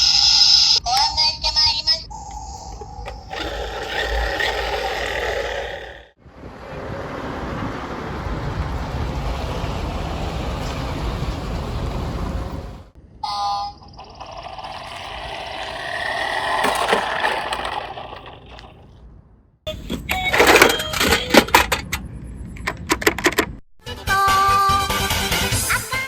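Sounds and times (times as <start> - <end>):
engine and road noise: 1.8 - 23.7
vehicle passing by: 5.6 - 12.9.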